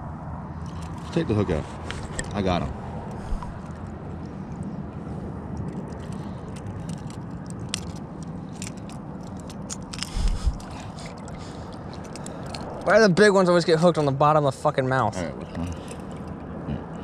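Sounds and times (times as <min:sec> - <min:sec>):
hook clicks and scrapes: 0:00.6 - 0:02.4, 0:05.6 - 0:12.9.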